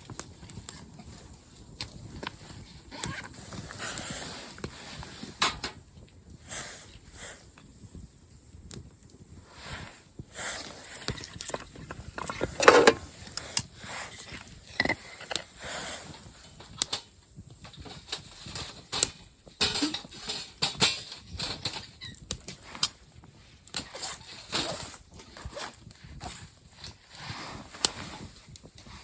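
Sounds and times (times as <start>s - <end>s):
rustling: 9.5s - 16.8s.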